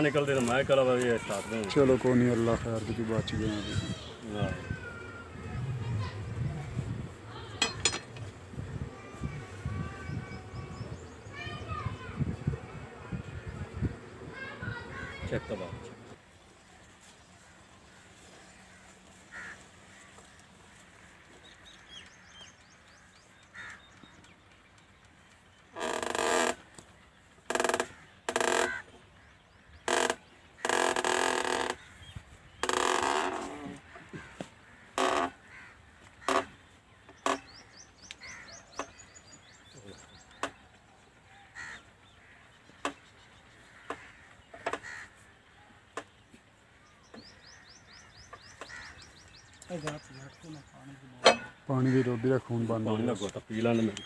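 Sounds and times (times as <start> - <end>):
birds calling faintly: 0.0 - 54.0
sharp short knocks: 51.2 - 51.6.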